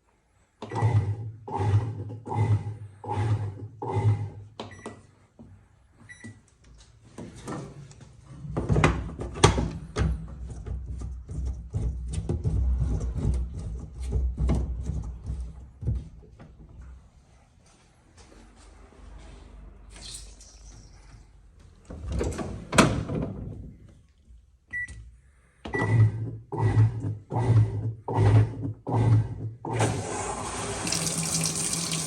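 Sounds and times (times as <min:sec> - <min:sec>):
washing machine beeps: 0:04.7 - 0:05.0, 0:06.0 - 0:06.4, 0:24.7 - 0:25.0, 0:25.7 - 0:26.1
washing machine motor hum: 0:29.7 - 0:32.0.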